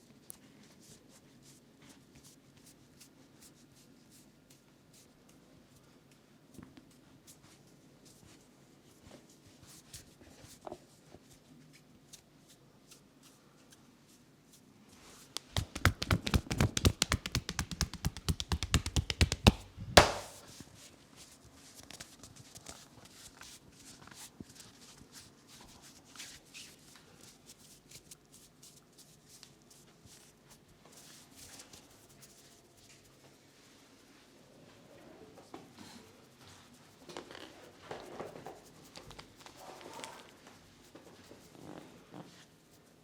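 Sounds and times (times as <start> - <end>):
hands rubbing: 15.2 - 20.4
hand slap: 15.4 - 20.4
hands tapping in massage: 15.4 - 20.4.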